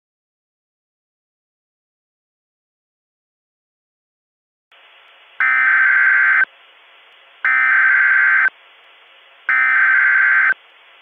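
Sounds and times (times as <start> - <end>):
faint radio hiss: 4.7 - 11.0
high-pitched digital data tones: 7.5 - 8.5, 9.5 - 10.6.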